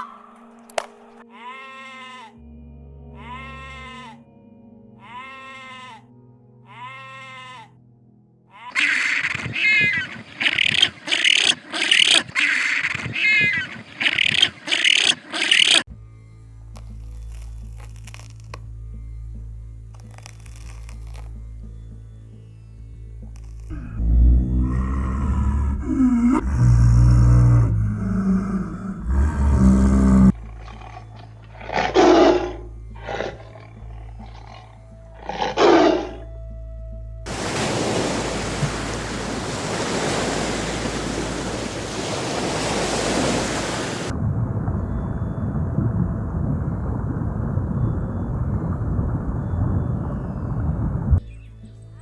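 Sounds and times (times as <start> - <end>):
music: 0.0 - 10.8, 15.9 - 37.4, 51.2 - 52.0
harsh shrill animal calls: 3.2 - 4.2, 5.0 - 6.0, 6.7 - 7.7, 8.5 - 15.8
big cat roaring: 23.7 - 36.3.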